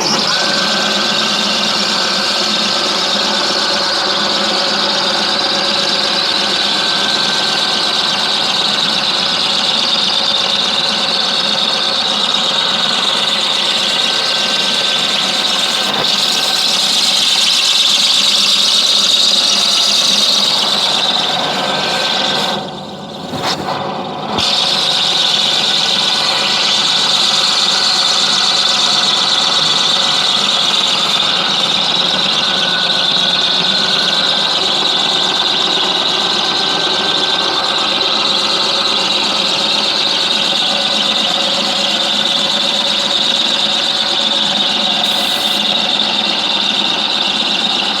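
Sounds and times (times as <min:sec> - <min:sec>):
machine tool squealing: 0:00.0 - 0:48.0.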